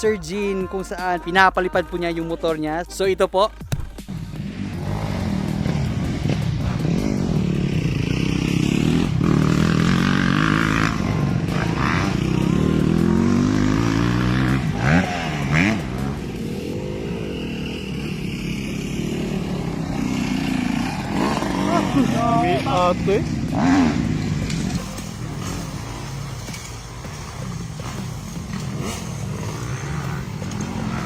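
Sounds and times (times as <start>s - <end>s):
dirt bike engine revving: 27.1s - 31.0s.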